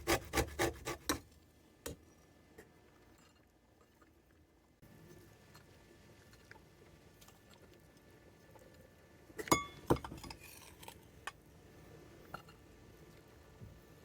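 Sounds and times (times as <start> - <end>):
glassware clinking: 9.4 - 10.3.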